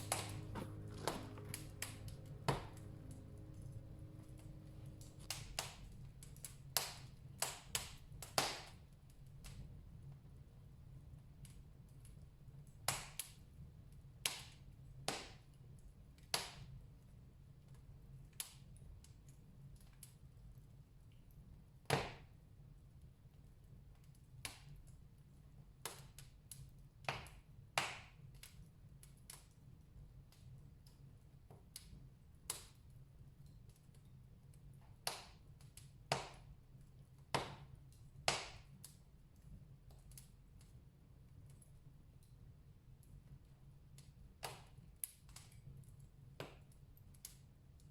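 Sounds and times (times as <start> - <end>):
wood fire crackling: 0.0 - 16.3, 17.1 - 47.9.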